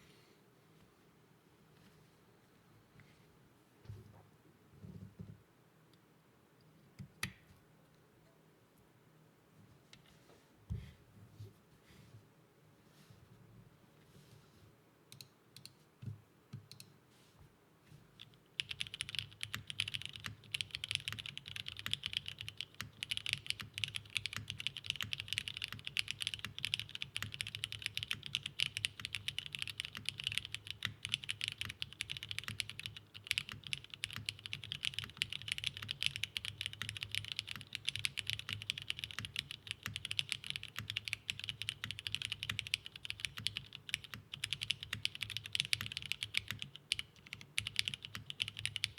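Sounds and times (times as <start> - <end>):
mechanical keyboard typing: 18.2 - 48.9.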